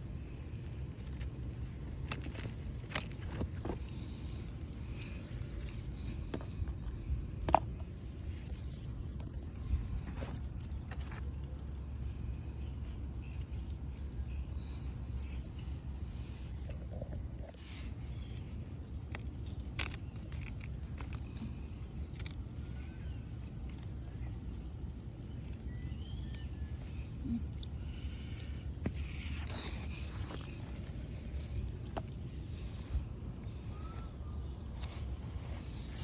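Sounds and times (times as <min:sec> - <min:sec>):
small birds chirping: 0:00.0 - 0:36.0
steady low rumble: 0:00.0 - 0:36.0.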